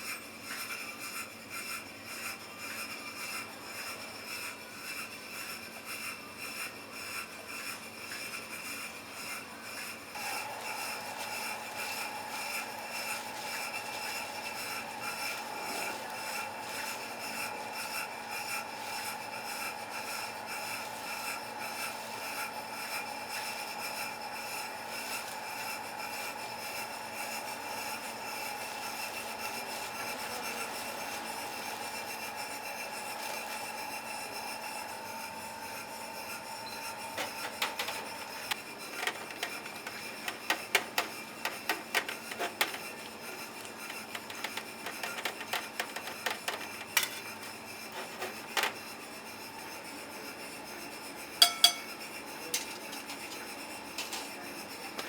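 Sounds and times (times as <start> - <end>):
utensils and dishware clattering: 37.2 - 48.9, 51.4 - 55.0
ringing clinks: 51.4 - 51.9
steady hum: 51.4 - 52.3.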